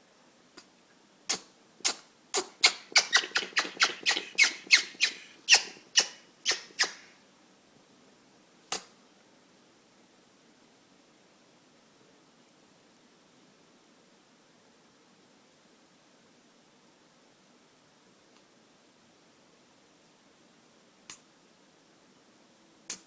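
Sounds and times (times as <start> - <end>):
parrot sneezing: 1.3 - 7.1.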